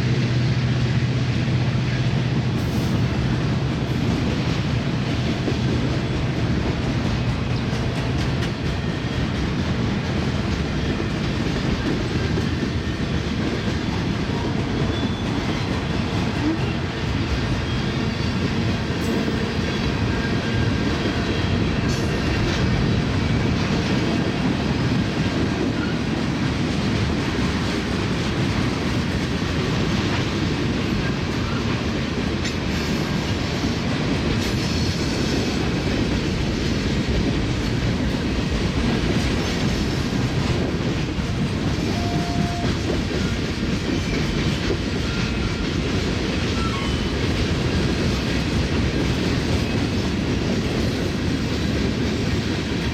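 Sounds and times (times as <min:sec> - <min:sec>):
freight train rumbling on rails: 0:00.0 - 0:52.9.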